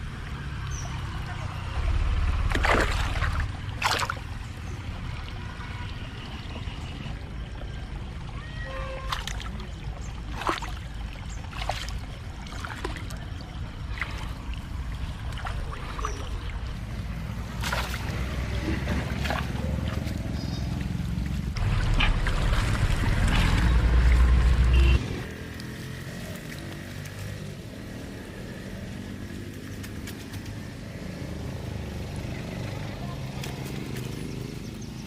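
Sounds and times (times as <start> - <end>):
water splashing around boat: 0.0 - 27.8.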